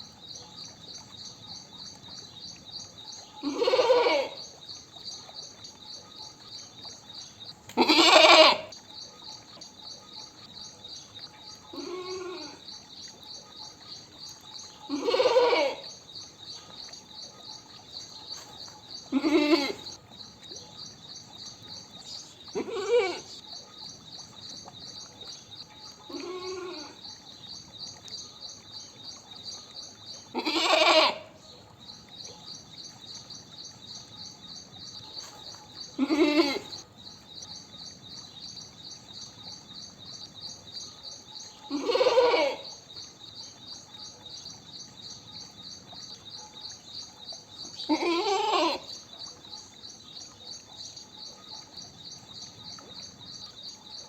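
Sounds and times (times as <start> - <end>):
goat bleating: 3.4 - 4.4, 7.8 - 8.7, 11.7 - 12.6, 14.9 - 15.8, 19.1 - 19.9, 22.6 - 23.3, 26.1 - 27.0, 30.3 - 31.3, 36.0 - 36.8, 41.7 - 42.7, 47.9 - 48.9.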